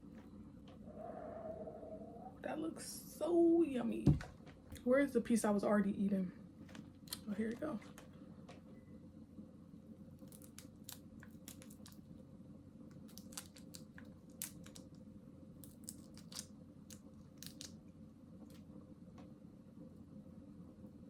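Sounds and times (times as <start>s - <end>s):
steady low hum: 0.0s - 21.0s
shellfish shell cracking: 10.2s - 12.0s, 12.9s - 15.0s, 15.6s - 17.8s.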